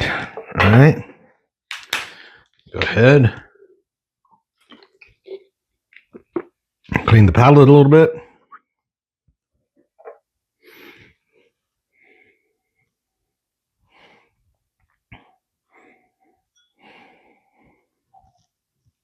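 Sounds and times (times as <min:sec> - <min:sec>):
person breathing and sniffing: 0:10.6 - 0:12.7.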